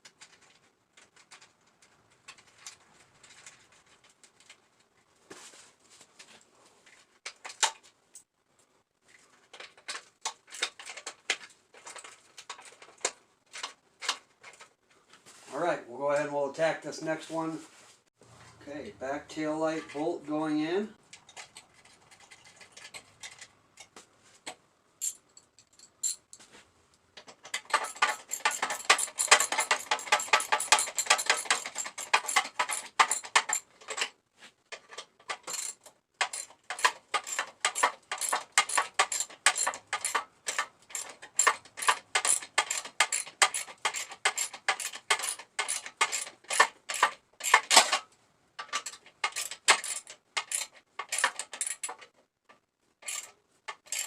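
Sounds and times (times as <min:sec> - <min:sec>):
ratchet wrench clicking: 0:35.5 - 0:47.9.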